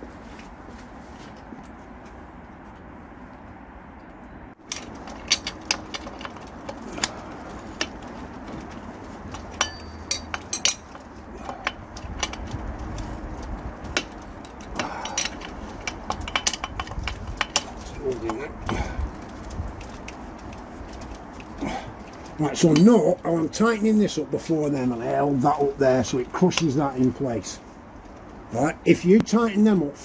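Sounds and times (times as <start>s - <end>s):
metal hand tools clinking: 8.6s - 18.8s.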